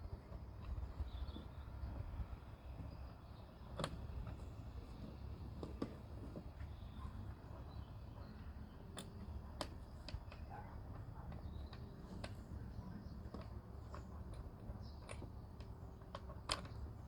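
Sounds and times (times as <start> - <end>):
lock parts clicking: 13.2 - 17.0.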